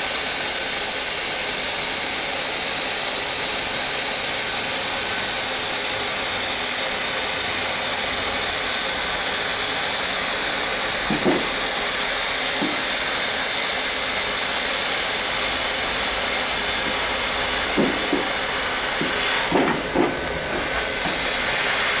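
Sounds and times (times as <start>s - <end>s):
hot-air welder hissing: 0.0s - 22.0s
soft knocks: 12.6s - 12.8s, 17.7s - 18.4s, 19.0s - 21.2s.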